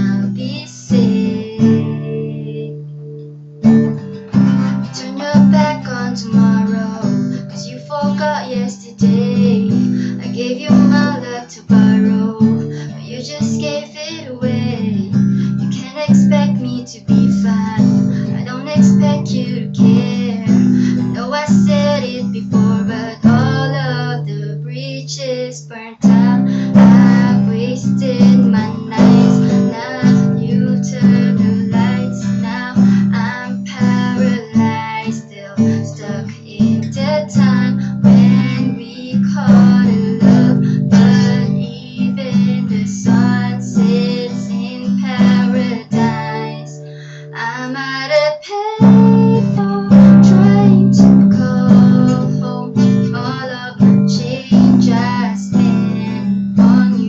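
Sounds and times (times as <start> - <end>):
acoustic guitar strumming: 0.0 - 48.2, 48.8 - 57.0.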